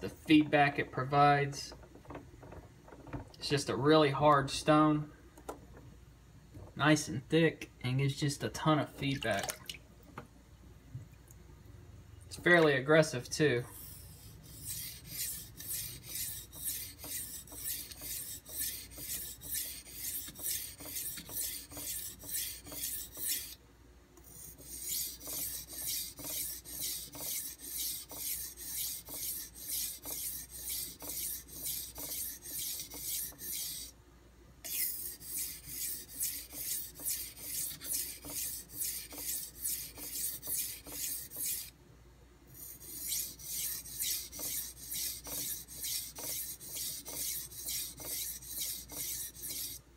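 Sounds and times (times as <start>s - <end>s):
knife scraping on whetstone: 13.6s - 23.6s, 24.2s - 34.0s, 34.6s - 41.7s, 42.5s - 49.8s.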